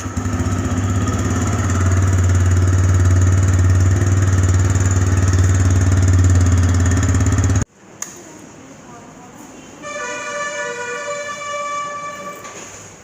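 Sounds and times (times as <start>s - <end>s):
motorcycle engine idling: 0.0s - 7.7s.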